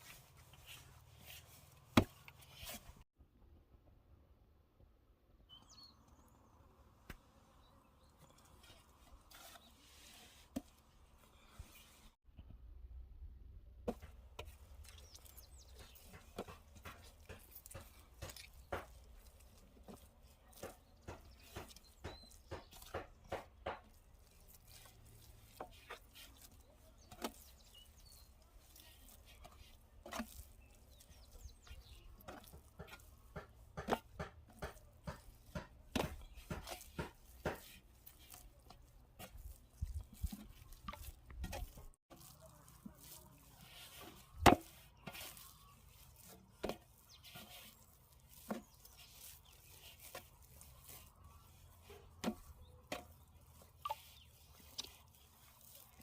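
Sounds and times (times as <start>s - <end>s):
chopping strokes: 15.7s - 27.6s, 31.8s - 42.0s, 42.8s - 51.1s.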